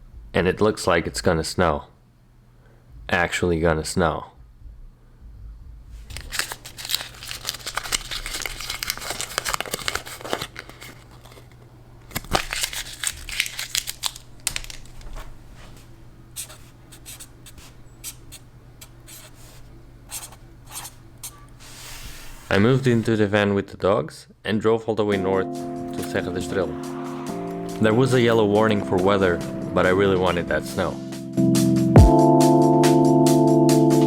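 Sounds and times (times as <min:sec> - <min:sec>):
steady low hum: 0:00.0 - 0:08.1, 0:14.1 - 0:23.2, 0:25.5 - 0:32.1
material rustling and crinkling: 0:06.0 - 0:17.8.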